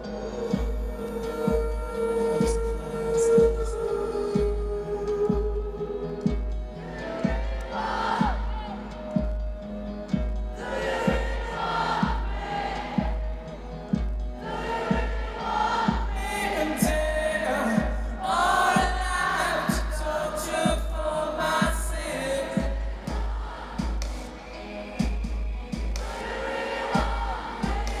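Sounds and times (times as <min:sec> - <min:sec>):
many voices singing together: 0:00.0 - 0:28.0
low bass beat: 0:11.1 - 0:24.4.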